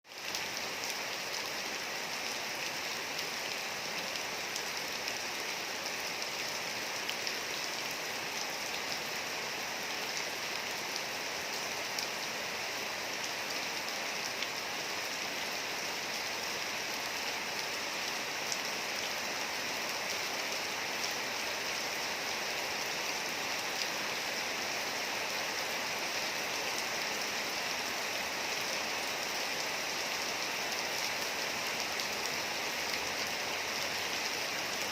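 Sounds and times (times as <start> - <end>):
rain on a hard surface: 0.0 - 34.9.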